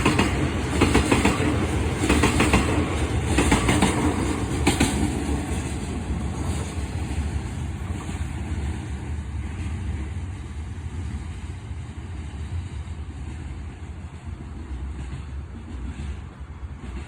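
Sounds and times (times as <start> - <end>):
train wheels clattering: 0.0 - 10.6
train low rumble: 0.0 - 17.0.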